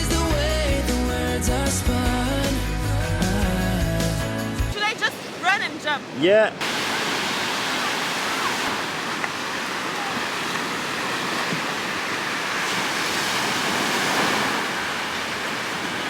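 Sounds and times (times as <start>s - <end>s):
sea waves washing onto beach: 4.8s - 16.0s.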